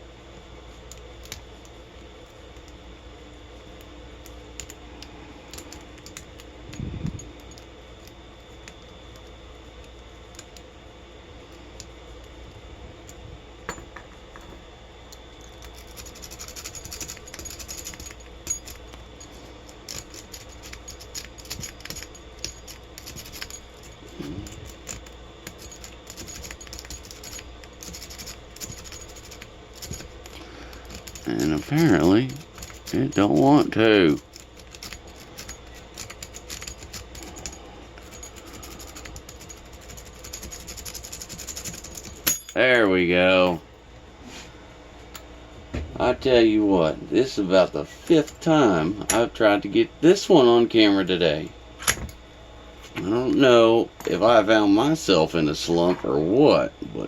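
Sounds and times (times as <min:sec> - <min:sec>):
lock picks scratching and clicking: 0:03.6 - 0:06.5, 0:15.1 - 0:42.5.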